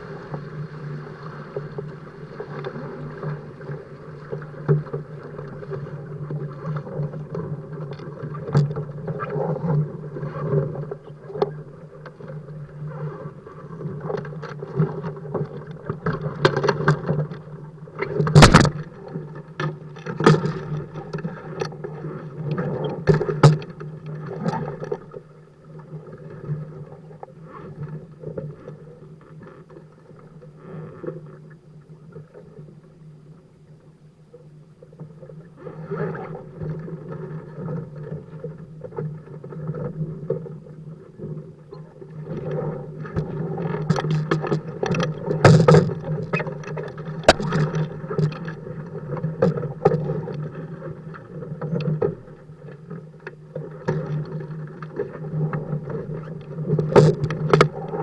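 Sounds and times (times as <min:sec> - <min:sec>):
water rushing along hulls: 0:00.0 - 0:58.0.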